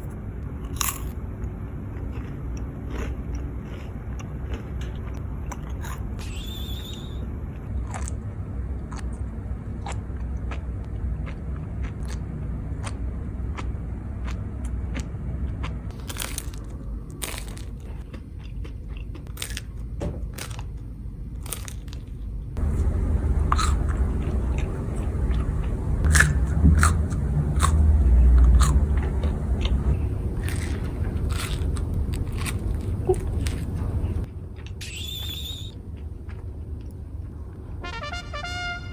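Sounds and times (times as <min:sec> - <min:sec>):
person chewing crunchy sandwich: 0:00.6 - 0:06.3, 0:07.6 - 0:20.8, 0:21.4 - 0:33.8
low rumble: 0:22.6 - 0:32.1.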